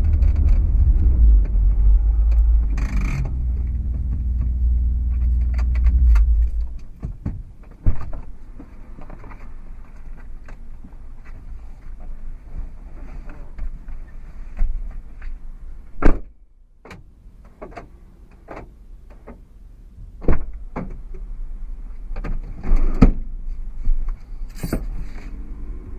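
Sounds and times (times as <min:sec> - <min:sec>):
suspension knocking: 0:00.0 - 0:07.4
low road rumble: 0:00.0 - 0:25.9.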